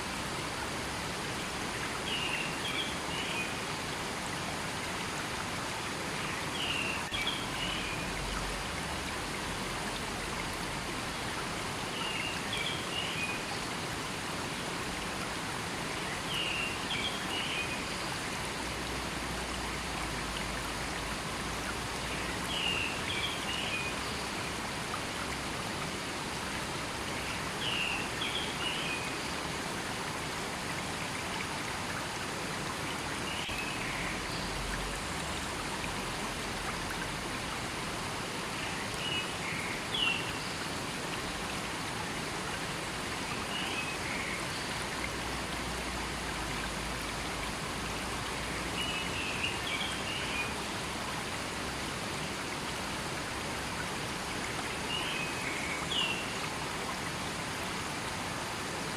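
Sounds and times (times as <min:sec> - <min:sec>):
river flowing over rocks: 0:00.0 - 0:58.9.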